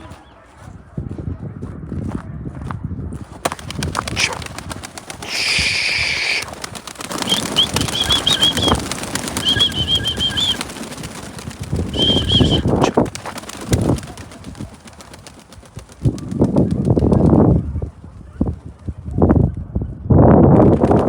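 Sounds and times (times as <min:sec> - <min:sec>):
wind buffeting microphone: 0:00.0 - 0:21.0
high bird chirps: 0:07.2 - 0:08.8, 0:09.4 - 0:10.6, 0:11.9 - 0:12.8.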